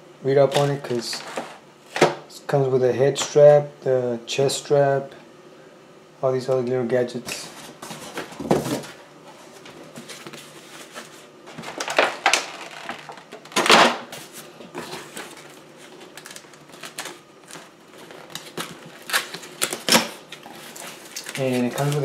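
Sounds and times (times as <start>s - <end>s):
plastic items clicking and knocking: 11.6s - 14.0s.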